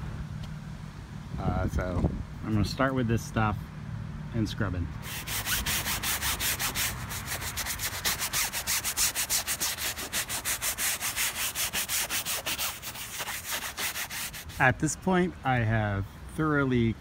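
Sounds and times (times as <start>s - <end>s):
scrub brush scrubbing wet vinyl: 5.1s - 14.7s.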